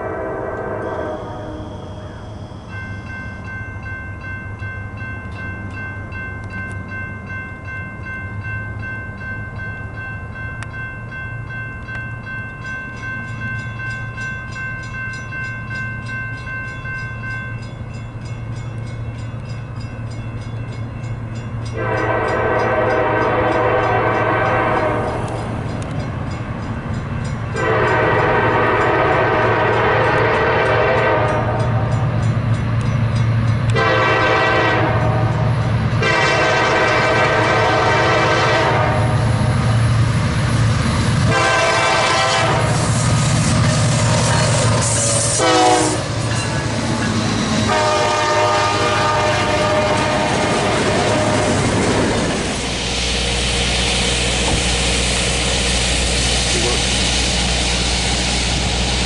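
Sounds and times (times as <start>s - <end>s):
train horn blasts: 0.0s - 2.4s, 21.7s - 25.3s, 27.5s - 31.9s, 33.7s - 39.2s, 41.3s - 43.2s, 43.8s - 47.0s, 47.6s - 51.7s
train engine rumble: 0.0s - 59.0s.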